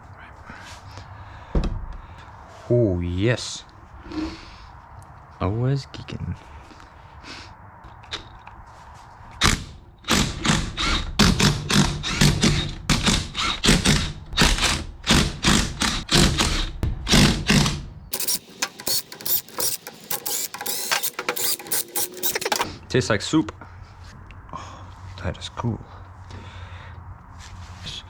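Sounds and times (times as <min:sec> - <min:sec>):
metal ratchet clicking: 0:18.1 - 0:22.7.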